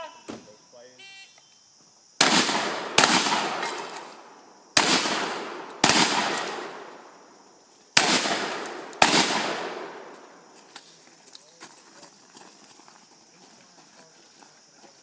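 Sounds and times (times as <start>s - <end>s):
gunshots with echoing decay: 2.2s - 7.3s, 8.0s - 10.5s.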